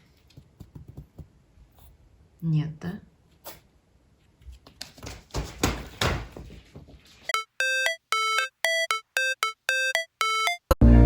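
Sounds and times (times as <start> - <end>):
electronic beeping melody: 7.3 - 10.8.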